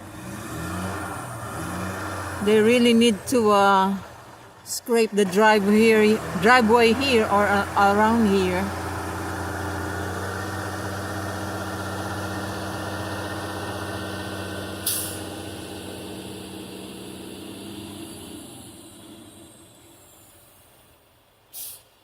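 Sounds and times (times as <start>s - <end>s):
heavy vehicle engine running: 0.0s - 21.3s
air brake hiss: 14.8s - 15.3s, 21.5s - 22.0s.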